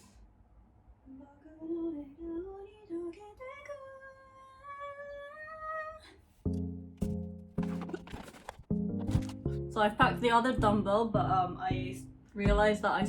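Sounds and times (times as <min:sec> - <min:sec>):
woman singing: 0:01.1 - 0:06.2, 0:09.8 - 0:13.0.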